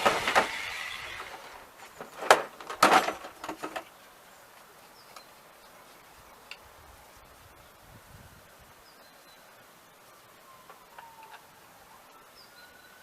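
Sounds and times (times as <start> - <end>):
power drill: 0.0 - 1.6.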